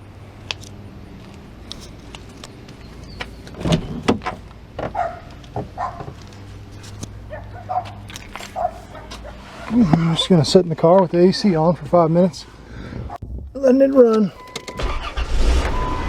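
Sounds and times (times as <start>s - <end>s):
car engine idling: 0.0s - 12.6s
knocks and clunks: 3.2s - 6.3s.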